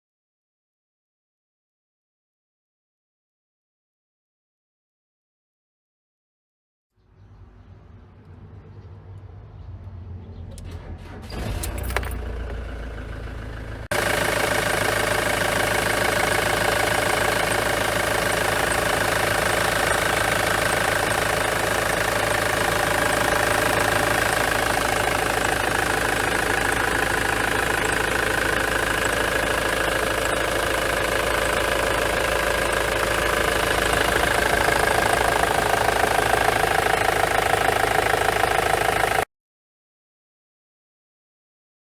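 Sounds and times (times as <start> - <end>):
diesel engine idling with misfire: 7.2 - 39.3.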